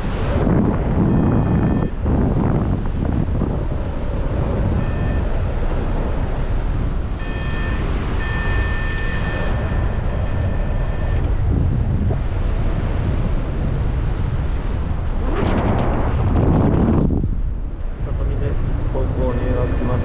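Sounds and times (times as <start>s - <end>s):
wind rushing over microphone: 0.0s - 20.0s
high electronic tone: 1.0s - 2.0s, 4.6s - 5.6s, 6.3s - 11.3s.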